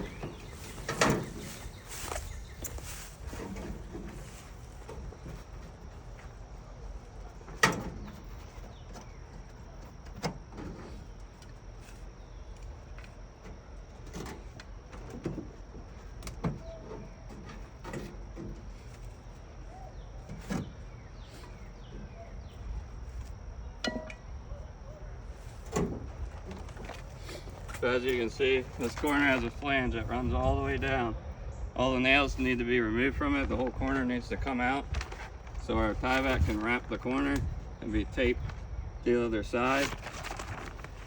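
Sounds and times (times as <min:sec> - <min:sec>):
metal siding knocks and clicks: 0:00.0 - 0:01.6.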